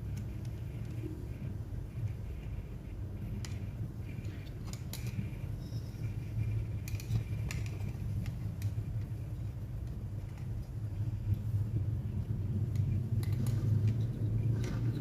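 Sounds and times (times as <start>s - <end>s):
steady low hum: 0.0s - 15.0s
clicks of small parts and screws: 3.4s - 11.4s, 12.7s - 15.0s.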